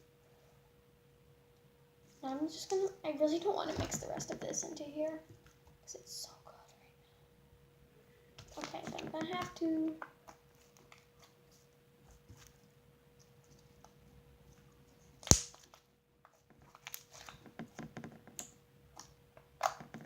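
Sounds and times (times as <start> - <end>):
loud slime snap: 15.2 - 15.6
sticky slime clicks and pops: 15.2 - 15.6.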